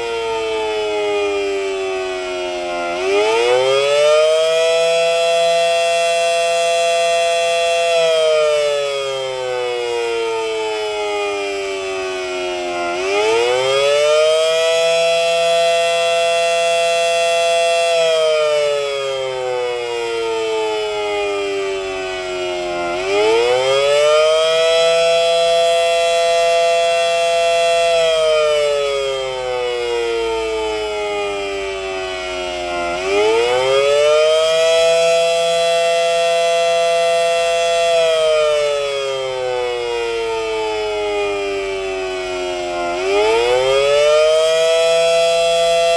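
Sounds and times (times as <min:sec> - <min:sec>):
outdoor warning siren: 0:00.0 - 0:45.9.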